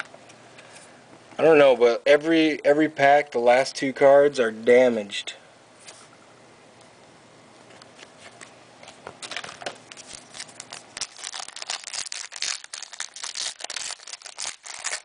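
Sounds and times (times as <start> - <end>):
wrapper crinkling and tearing: 9.2 - 15.0.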